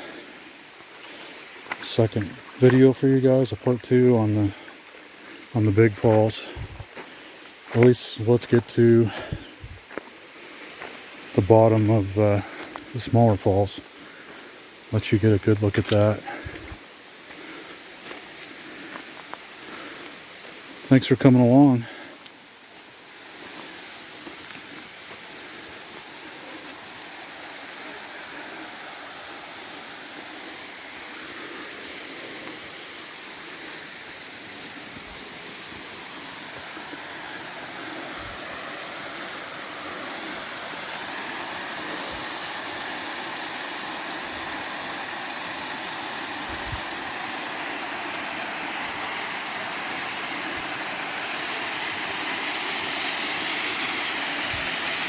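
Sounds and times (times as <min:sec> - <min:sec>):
waterfall roaring: 0:23.8 - 0:55.0.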